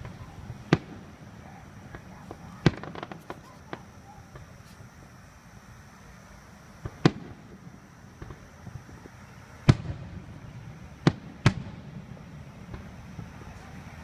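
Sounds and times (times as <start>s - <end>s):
small firework pops: 0.0s - 1.1s, 1.9s - 4.9s, 6.8s - 7.6s, 8.2s - 10.1s, 11.0s - 11.8s, 12.6s - 13.0s
fireworks bangs: 0.0s - 5.2s, 6.5s - 14.0s.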